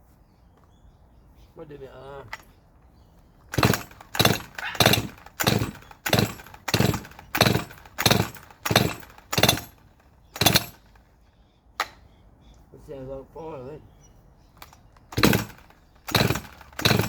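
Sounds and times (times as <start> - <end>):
chainsaw engine cranking: 3.4 - 11.0, 14.6 - 17.0.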